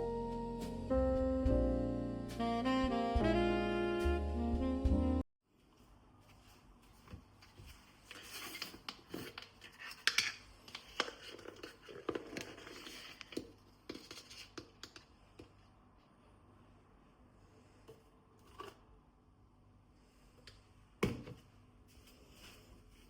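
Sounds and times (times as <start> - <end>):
rustling and scraping: 6.2 - 14.8, 21.3 - 23.0.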